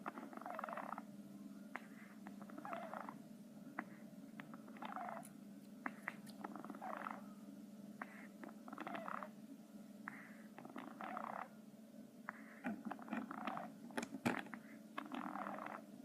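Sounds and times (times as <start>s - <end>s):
hedgehog snoring: 0.0s - 1.1s, 1.8s - 3.2s, 4.7s - 5.2s, 5.8s - 7.2s, 8.0s - 9.3s, 10.1s - 11.5s, 12.3s - 13.7s, 14.6s - 15.8s.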